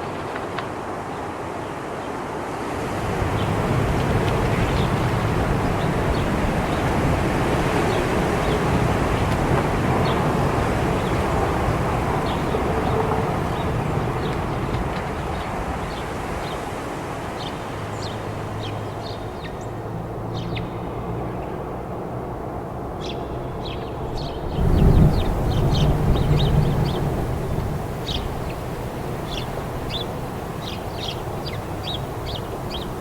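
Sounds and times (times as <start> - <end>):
blizzard wind rushing: 2.7 - 17.4, 22.2 - 33.0.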